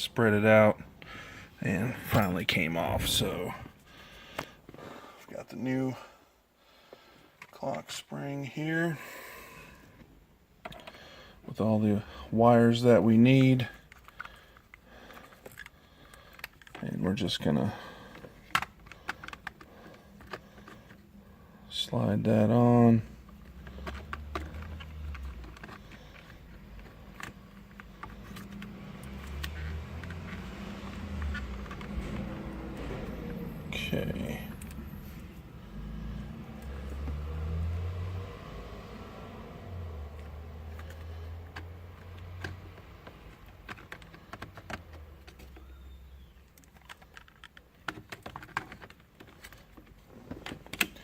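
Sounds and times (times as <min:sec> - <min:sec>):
plastic parts clicking and tapping: 0:10.6 - 0:11.0, 0:13.3 - 0:17.4, 0:18.0 - 0:21.1, 0:23.2 - 0:35.3, 0:40.2 - 0:51.0.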